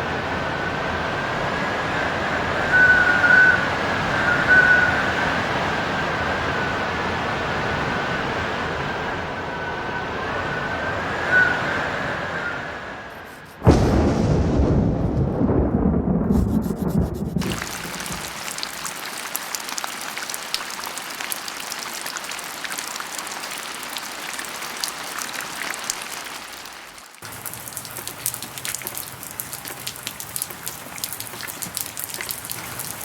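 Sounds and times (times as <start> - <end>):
sharp separate raindrops: 0.0 - 5.3, 13.6 - 33.0
steady rain: 0.0 - 13.0, 13.6 - 33.0.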